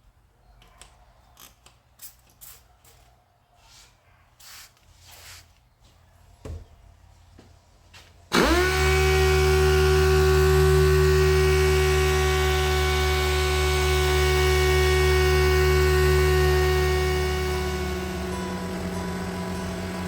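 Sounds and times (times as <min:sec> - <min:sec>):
power sander motor whining: 0:08.3 - 0:20.0.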